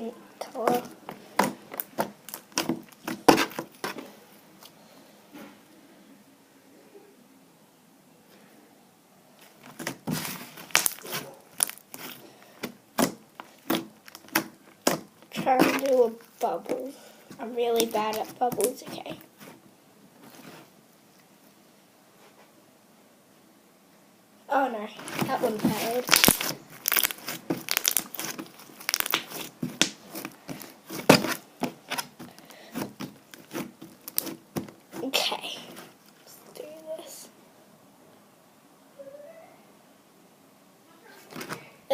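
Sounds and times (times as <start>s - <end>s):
slime squished with sticky pops: 0.6s - 4.0s, 9.6s - 16.8s, 25.1s - 35.0s.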